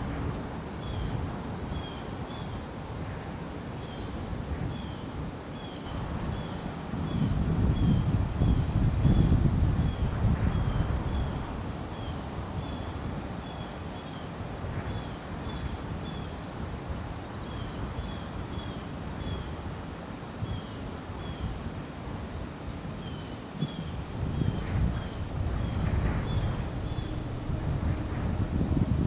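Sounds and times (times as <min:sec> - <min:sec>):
wind blowing over microphone: 0:00.0 - 0:29.0.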